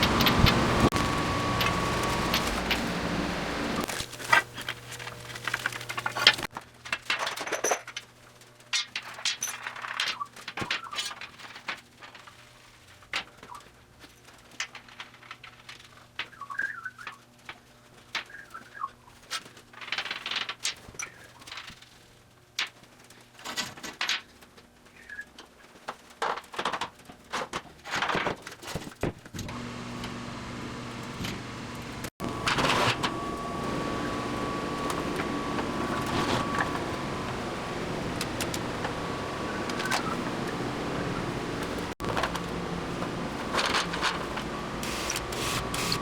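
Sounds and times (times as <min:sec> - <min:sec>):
steady machine noise: 0:00.0 - 0:06.5, 0:29.5 - 0:46.0
faint steady hum: 0:00.0 - 0:06.6, 0:29.4 - 0:46.0.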